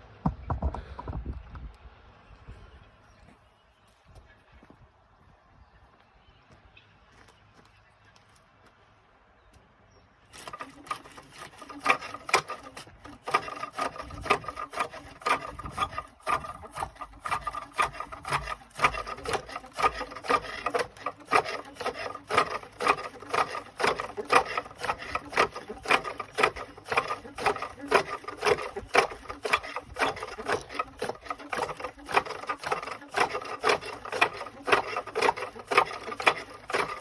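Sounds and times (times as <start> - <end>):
cutting tool scraping wood on lathe: 10.3 - 37.0.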